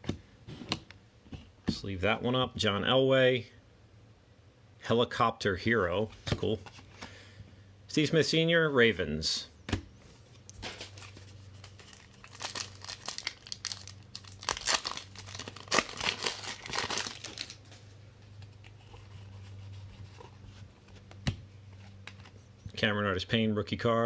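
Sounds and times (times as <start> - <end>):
low steady hum: 0.0 - 24.0
foil wrapper crinkling and tearing: 10.7 - 17.8.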